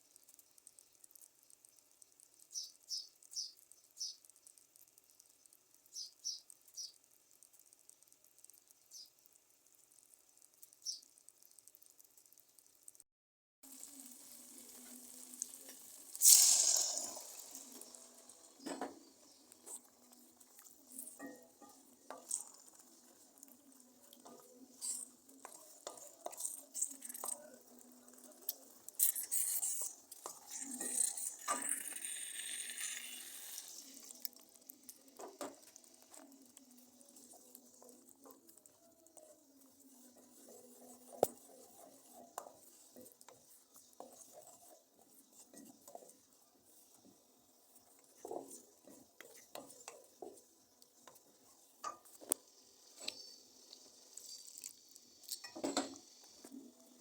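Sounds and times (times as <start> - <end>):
loud hiss from pot: 13.7 - 20.2, 24.7 - 37.6, 51.9 - 57.0.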